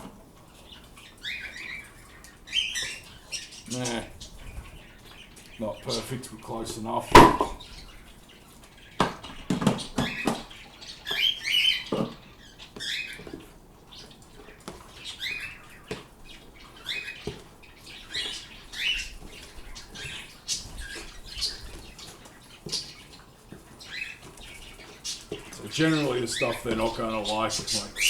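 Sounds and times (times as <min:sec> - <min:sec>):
pet birds chirping: 0:00.0 - 0:28.0
sharp knocks and clatters: 0:07.1 - 0:07.6.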